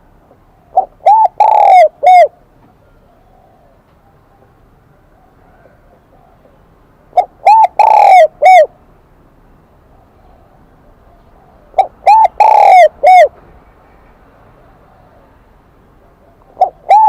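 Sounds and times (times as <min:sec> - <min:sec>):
dove cooing: 0:00.0 - 0:08.8, 0:09.9 - 0:13.4, 0:16.0 - 0:17.0.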